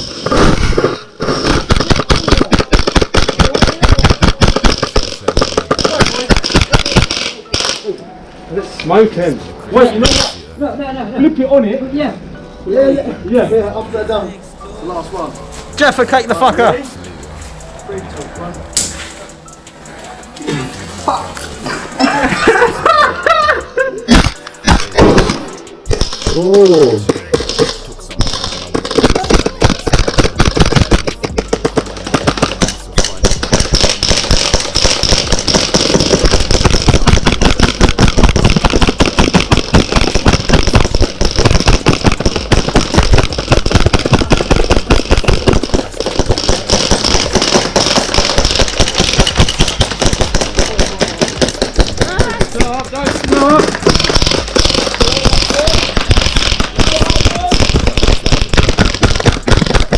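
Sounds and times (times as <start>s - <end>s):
airsoft guns rapid firing: 0.0s - 7.8s, 24.1s - 59.9s
voices: 1.7s - 39.4s, 44.0s - 59.9s.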